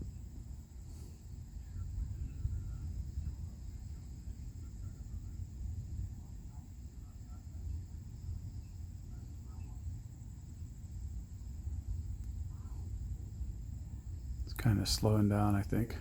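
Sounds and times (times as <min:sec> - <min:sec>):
insects trilling: 0:00.0 - 0:16.0
low steady rumble: 0:00.0 - 0:16.0.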